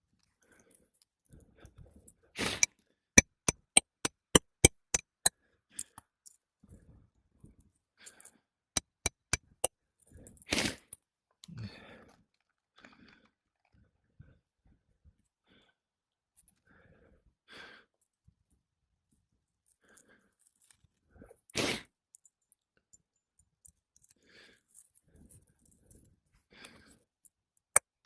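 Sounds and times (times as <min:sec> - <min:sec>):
hammer driving nails: 0:03.2 - 0:05.3, 0:08.8 - 0:09.7.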